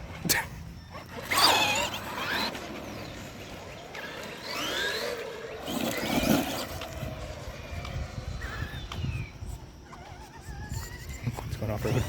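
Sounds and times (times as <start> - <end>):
electric toy car motor whining: 0.0 - 12.0.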